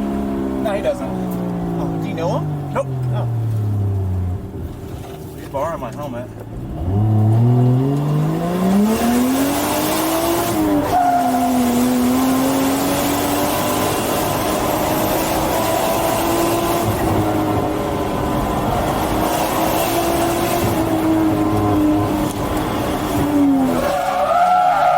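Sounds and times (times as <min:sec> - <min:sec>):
car engine accelerating: 0:00.0 - 0:24.9
tyres squealing: 0:10.8 - 0:11.9, 0:23.7 - 0:24.9.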